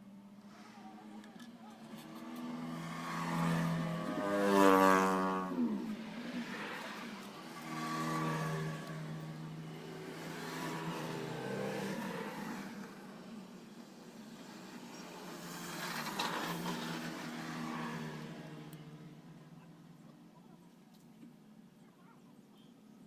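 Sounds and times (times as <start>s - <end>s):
motorcycle engine revving: 1.7s - 13.1s.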